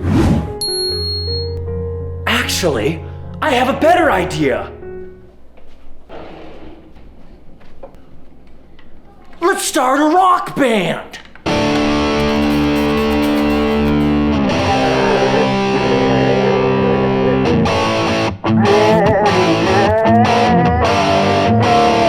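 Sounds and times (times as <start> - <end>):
wavering guitar melody: 12.2 - 14.4.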